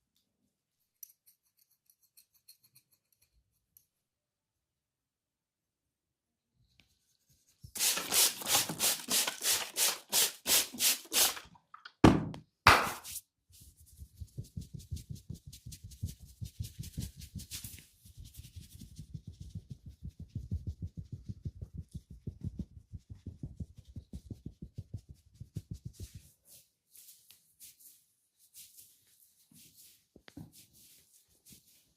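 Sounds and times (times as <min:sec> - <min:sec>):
hands rubbing skin: 0:07.7 - 0:11.4, 0:12.8 - 0:31.9
hand slaps: 0:12.7 - 0:13.2
soft dull patting: 0:13.8 - 0:26.3.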